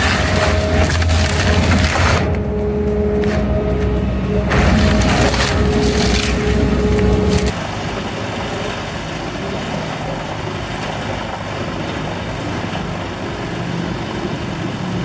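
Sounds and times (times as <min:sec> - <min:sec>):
wood crushing: 0:00.0 - 0:07.5
wood chipper diesel engine: 0:00.0 - 0:07.9.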